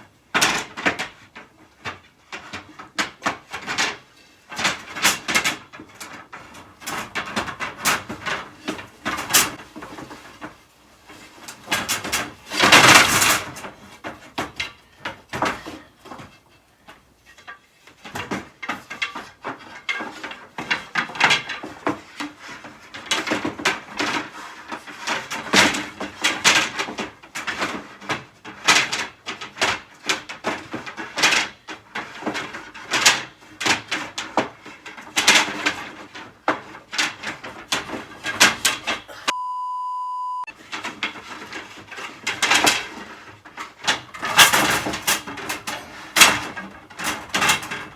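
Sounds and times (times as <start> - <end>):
wooden slats clattering: 0.4 - 39.2, 40.6 - 47.9
wood scraping: 5.8 - 22.9.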